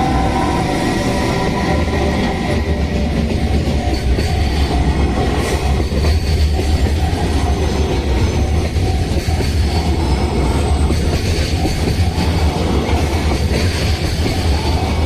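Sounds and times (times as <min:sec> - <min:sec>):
two-tone crossing alarm: 0:00.0 - 0:05.9
freight train wheels rumbling: 0:00.0 - 0:15.0.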